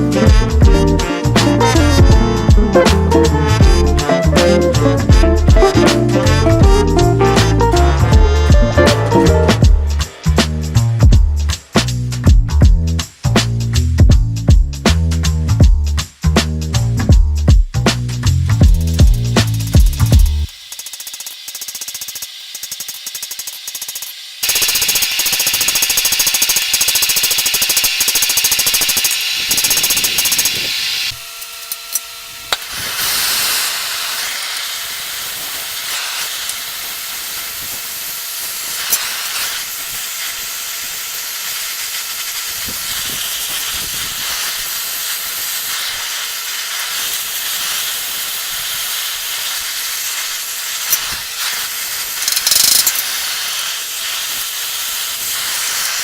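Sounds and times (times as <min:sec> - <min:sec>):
upbeat electronic music with drums: 0:00.0 - 0:20.5
steady hiss: 0:08.8 - 0:17.1, 0:17.7 - 0:31.2, 0:32.5 - 0:56.0.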